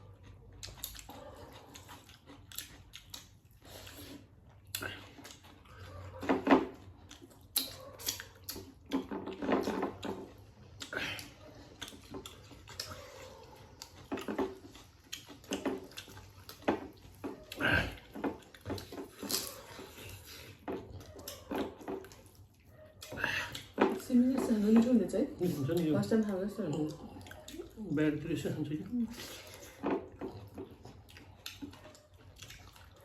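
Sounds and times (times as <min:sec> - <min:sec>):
chewing and smacking: 0:00.0 - 0:33.0.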